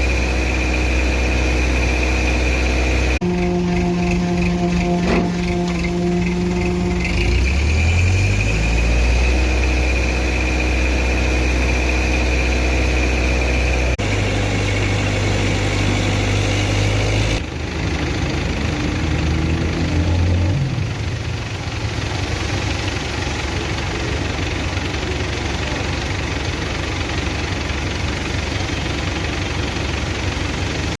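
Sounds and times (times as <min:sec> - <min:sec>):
high steady whine: 0:00.0 - 0:17.5
construction machinery engine: 0:00.0 - 0:31.0.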